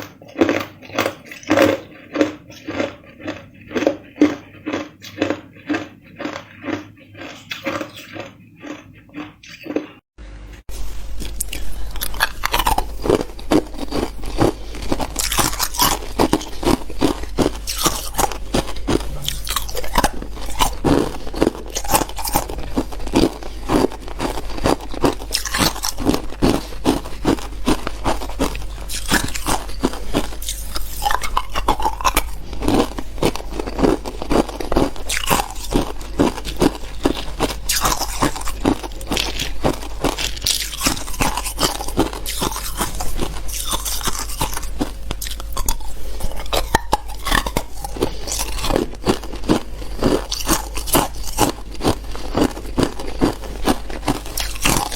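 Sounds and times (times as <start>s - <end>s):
person crunching ice: 0.0s - 9.9s, 11.2s - 54.9s.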